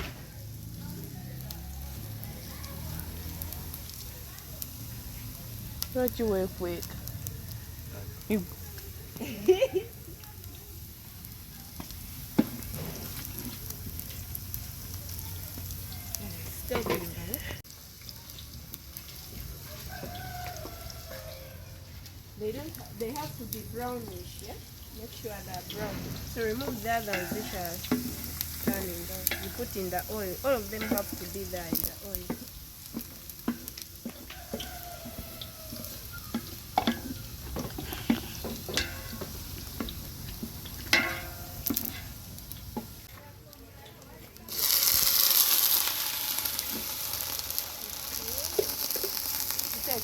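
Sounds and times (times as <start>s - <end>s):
onions sizzling in oil: 0.0s - 50.0s
rooster crowing: 19.6s - 21.9s, 34.1s - 36.4s
spoon knocking against pot: 30.8s - 42.0s.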